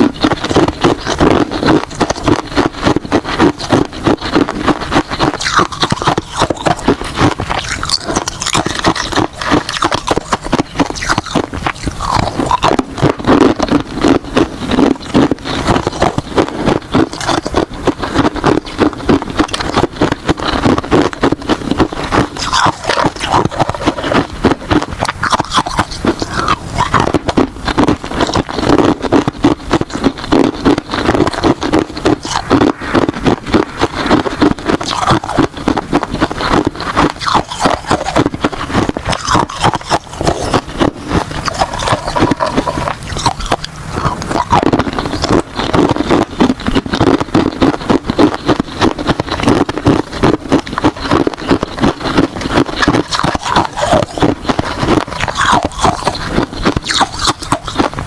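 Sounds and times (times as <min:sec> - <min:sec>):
ice being chewed: 0:00.0 - 0:58.0.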